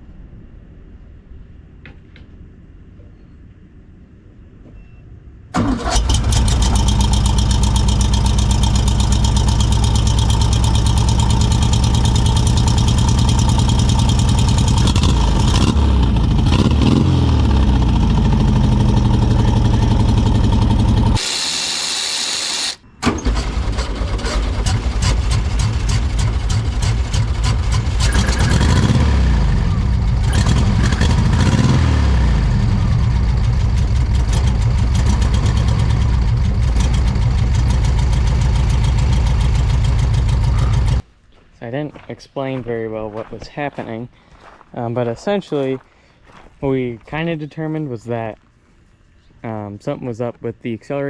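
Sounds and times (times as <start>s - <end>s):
car engine starting and running: 5.5s - 41.0s.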